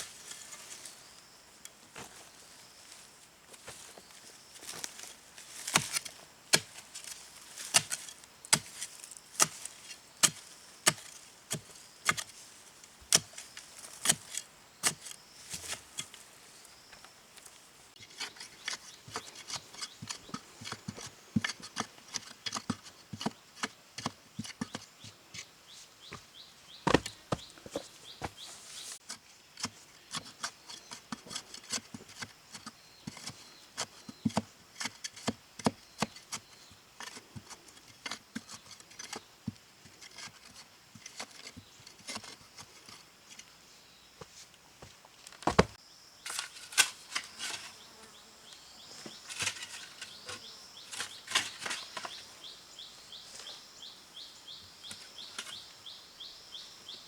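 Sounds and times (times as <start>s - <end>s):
sharp knocks by hand: 26.8s - 28.3s, 45.4s - 45.8s.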